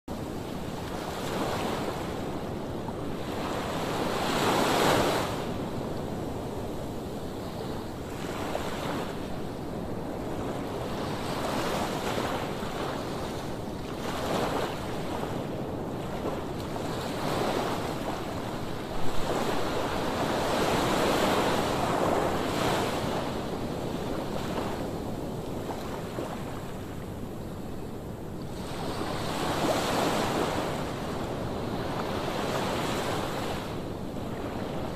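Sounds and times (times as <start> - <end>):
sea waves breaking on beach: 7.5 - 27.0.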